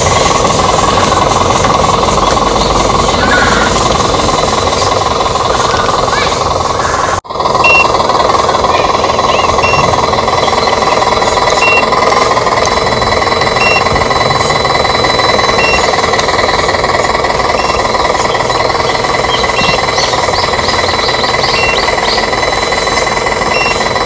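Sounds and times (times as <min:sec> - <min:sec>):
toy truck motor rattling: 0:00.0 - 0:24.0
short high beeps: 0:07.6 - 0:08.0, 0:09.2 - 0:16.7, 0:17.4 - 0:20.0, 0:20.9 - 0:24.0.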